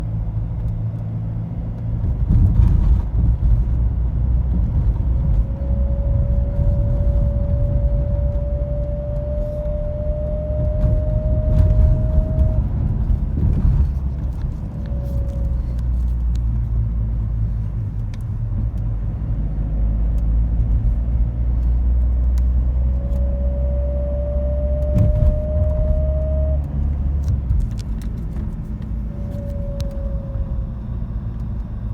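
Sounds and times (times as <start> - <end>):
road and engine rumble: 0.0 - 31.9
thin whine: 28.6 - 31.1.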